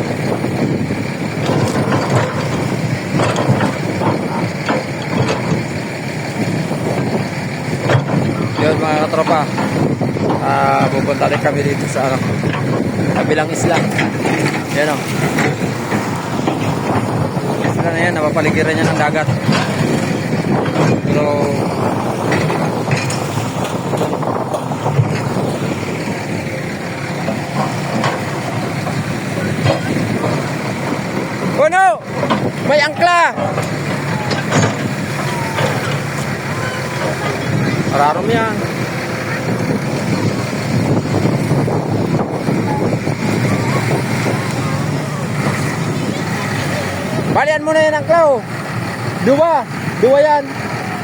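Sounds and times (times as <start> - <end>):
engine running: 0.0 - 51.0
knocks clatter and crackle: 0.0 - 51.0.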